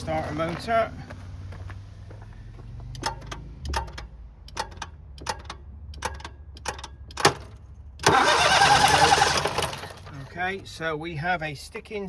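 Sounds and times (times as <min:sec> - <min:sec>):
starter solenoid clicking: 0:02.9 - 0:10.1.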